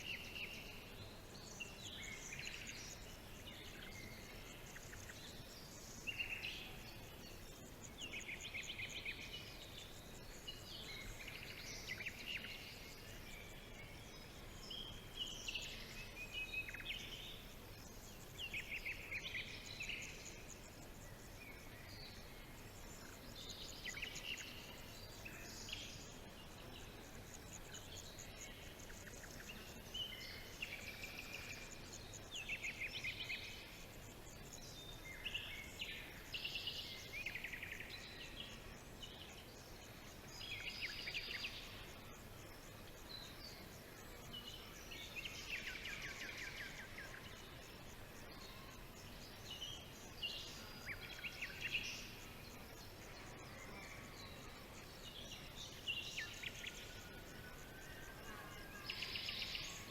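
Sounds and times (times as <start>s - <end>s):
songbirds singing: 0.0s - 59.9s
steady background hiss: 0.0s - 59.9s.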